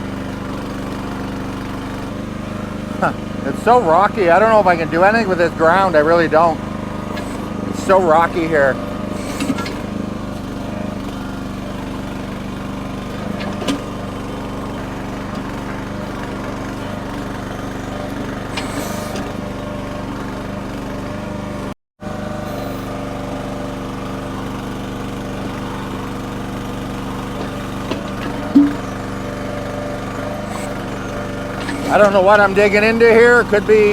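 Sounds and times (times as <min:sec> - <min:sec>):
small engine running: 0:00.0 - 0:33.9
bucket digging rocky ground: 0:27.4 - 0:32.8.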